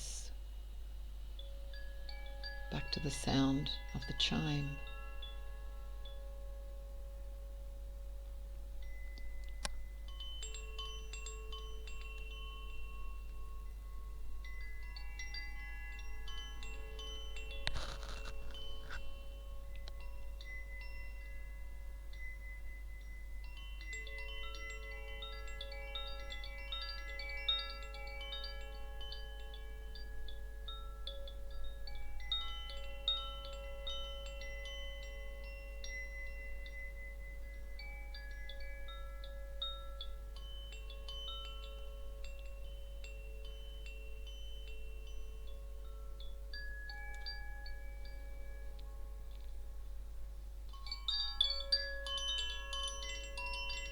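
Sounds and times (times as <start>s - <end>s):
wind chime ringing: 0.0s - 53.9s.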